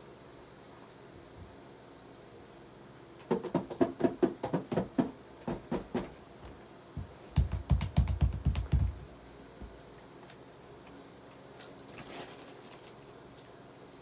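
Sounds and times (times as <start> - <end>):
sharp taps: 7.4 - 9.1.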